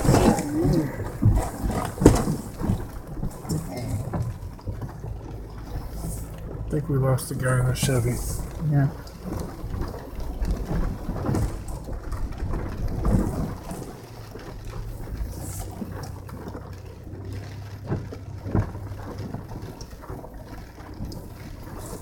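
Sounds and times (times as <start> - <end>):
dull thumps: 0.0 - 5.1
car engine humming: 0.0 - 22.0
rain and water noise: 0.0 - 22.0.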